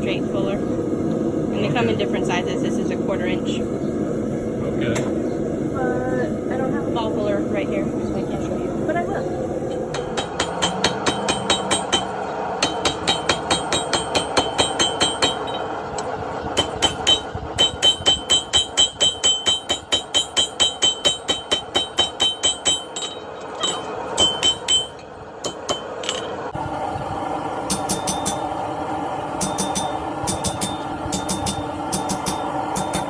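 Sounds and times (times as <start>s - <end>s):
hammer striking steel on anvil: 9.7s - 26.3s, 27.7s - 28.6s, 29.4s - 33.0s.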